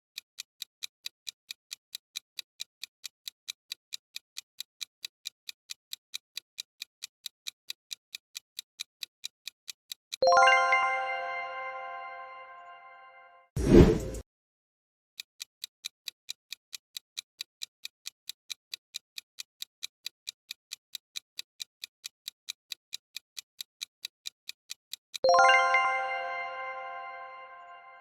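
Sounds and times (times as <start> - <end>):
clock ticking: 0.2 - 11.4, 15.4 - 26.2
bright ringing chime: 10.2 - 13.2, 25.3 - 28.0.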